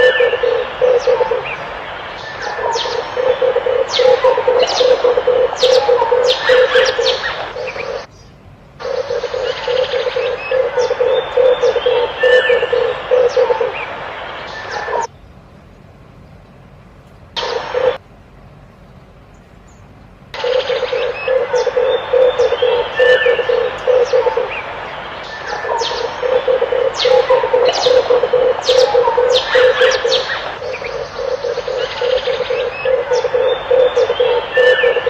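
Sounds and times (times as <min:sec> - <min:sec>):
dove cooing: 0:00.0 - 0:08.1, 0:08.8 - 0:15.1, 0:17.4 - 0:18.0, 0:20.4 - 0:35.0
small birds chirping: 0:00.0 - 0:16.8, 0:18.8 - 0:35.0.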